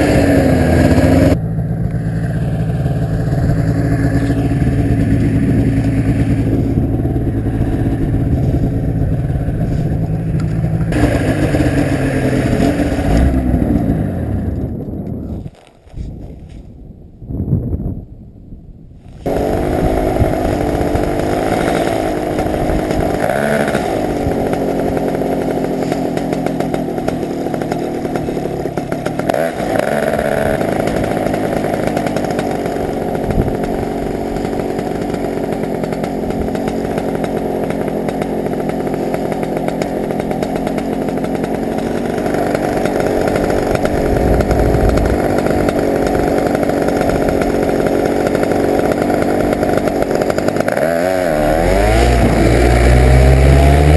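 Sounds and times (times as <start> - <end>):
paramotor engine running: 0.0 - 15.2, 19.3 - 53.9
wind rumble on microphone: 6.1 - 10.4, 13.6 - 21.2, 33.2 - 34.1, 43.6 - 46.3.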